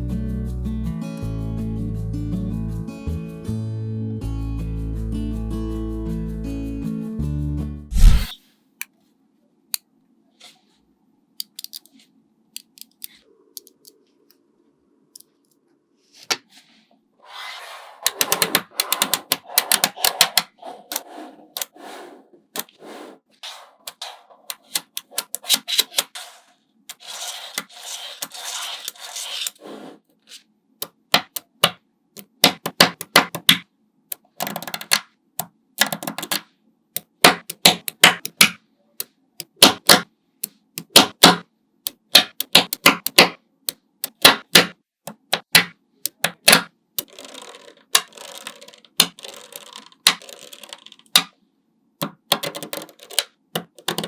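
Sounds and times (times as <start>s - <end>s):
balls rattling and rolling: 18.0s - 22.8s, 45.4s - 51.3s, 52.3s - 54.0s
magnetic balls clicking together: 18.1s - 21.0s, 30.8s - 36.4s, 37.0s - 38.6s, 39.4s - 40.1s, 40.8s - 51.3s, 52.0s - 54.0s.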